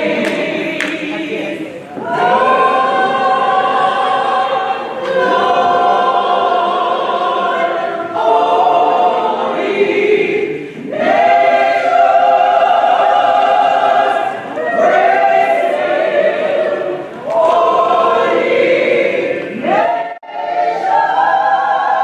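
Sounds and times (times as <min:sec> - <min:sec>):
choir singing held chords: 0:00.0 - 0:22.0
singers breathing: 0:10.6 - 0:10.9.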